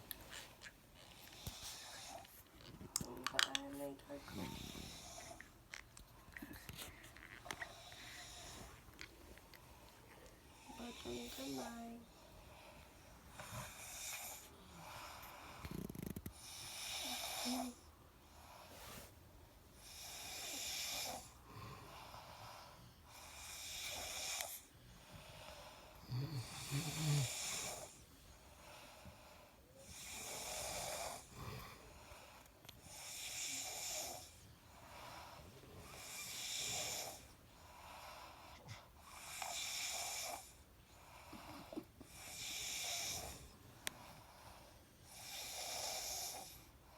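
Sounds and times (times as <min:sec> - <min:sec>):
people snoring: 0:04.1 - 0:05.4, 0:10.6 - 0:12.7, 0:13.3 - 0:17.8, 0:19.8 - 0:38.6, 0:39.2 - 0:46.8.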